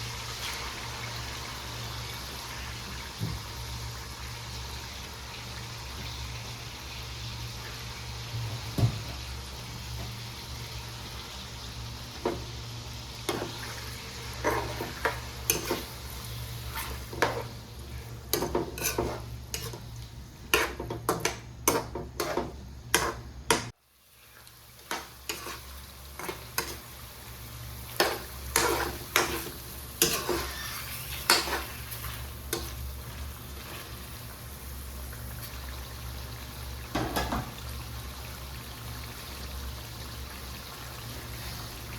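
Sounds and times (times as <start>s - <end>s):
food sizzling in pan: 0.0s - 41.9s
spatula scraping and clinking pan: 14.4s - 16.0s, 18.3s - 19.8s, 24.9s - 25.6s, 28.0s - 32.8s.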